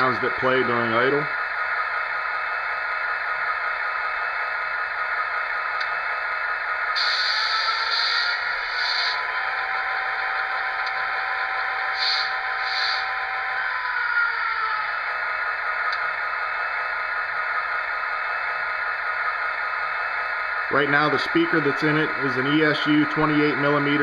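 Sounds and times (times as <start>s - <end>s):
short hissing bursts: 7.0s - 9.2s, 12.0s - 13.1s.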